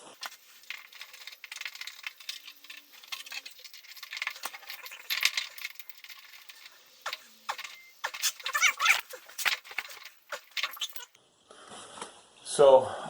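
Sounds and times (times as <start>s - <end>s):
metal tools clinking: 0.2s - 11.1s.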